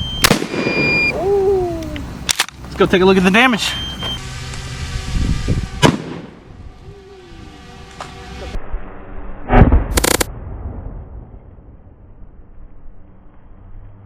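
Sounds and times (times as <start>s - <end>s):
dense buzzing noise: 3.9s - 14.0s
sharp bangs: 5.6s - 6.6s, 9.4s - 12.1s.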